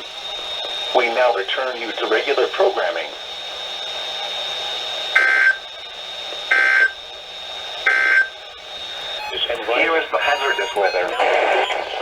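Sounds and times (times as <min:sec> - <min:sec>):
radio static hiss: 0:00.0 - 0:12.0
short digital data bursts: 0:07.9 - 0:12.0.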